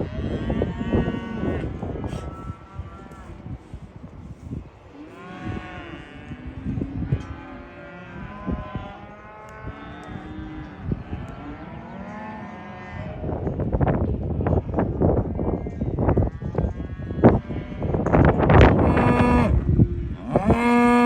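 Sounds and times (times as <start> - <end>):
cattle mooing and bawling: 18.7 - 21.0.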